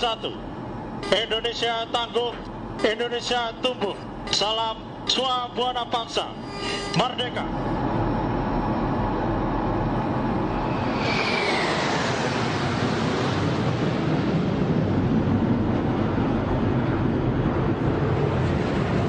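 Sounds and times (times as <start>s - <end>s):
jets flying past: 7.7s - 19.0s.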